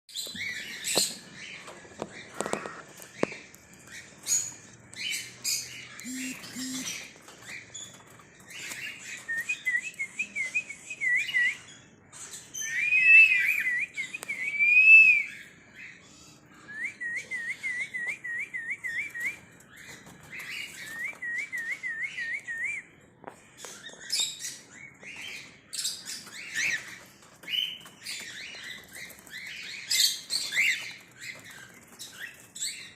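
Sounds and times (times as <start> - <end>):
cockatiels chirping: 0.2 - 9.7, 23.6 - 32.9
wavering whistled bird notes: 6.0 - 7.0, 12.6 - 15.5, 16.6 - 19.4.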